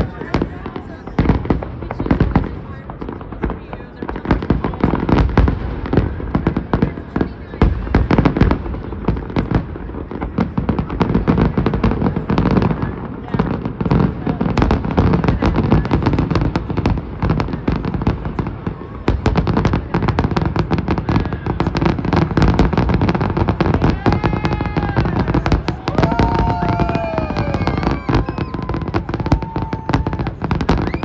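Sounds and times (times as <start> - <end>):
fireworks bangs and crackling: 0.0 - 31.0
fireworks whistling: 21.4 - 31.0.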